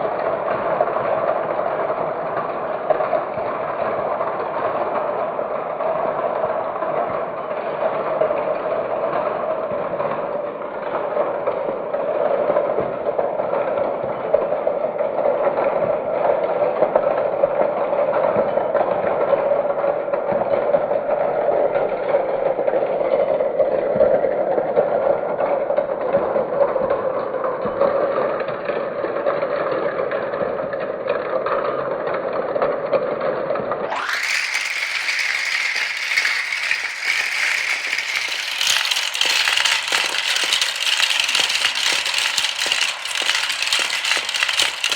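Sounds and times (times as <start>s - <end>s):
marbles rattling down track: 33.9s - 44.9s.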